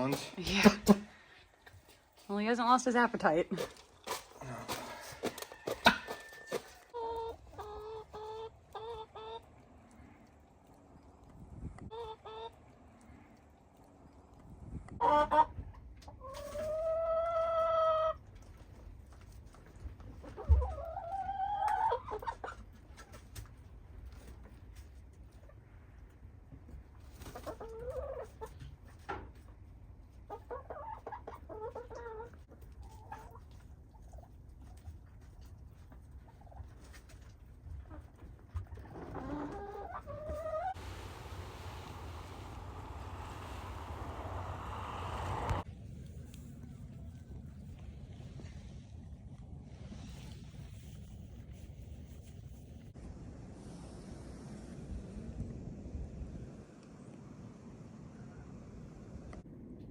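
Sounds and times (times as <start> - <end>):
chickens clucking and calling: 4.1 - 18.6, 20.0 - 23.2, 27.2 - 34.9, 36.2 - 45.7
steady rushing noise: 40.8 - 45.7.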